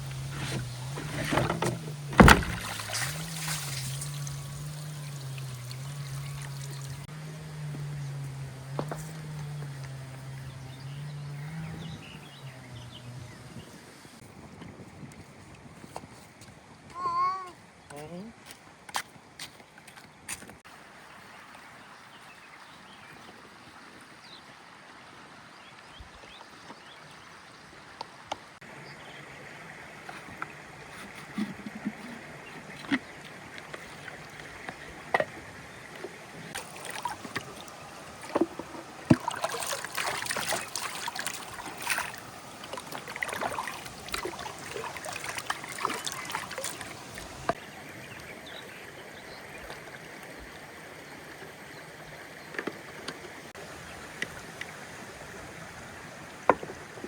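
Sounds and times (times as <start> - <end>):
water trickling and splashing: 0.0 - 57.0
knocks and clatter: 0.3 - 3.1.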